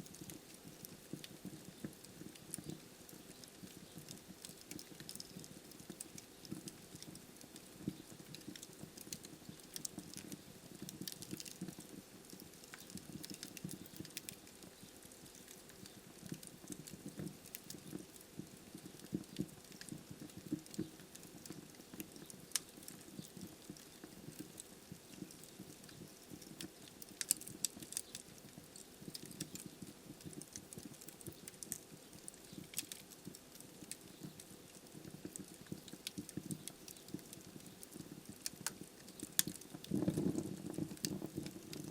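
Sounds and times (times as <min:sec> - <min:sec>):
wood fire crackling: 0:00.0 - 0:41.9
flame fluttering: 0:32.5 - 0:41.9.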